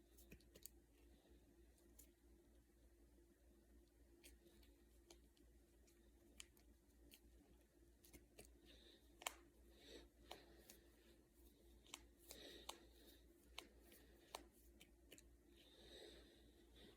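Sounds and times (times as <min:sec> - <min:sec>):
knuckles cracking: 0:08.0 - 0:09.5, 0:11.8 - 0:15.3.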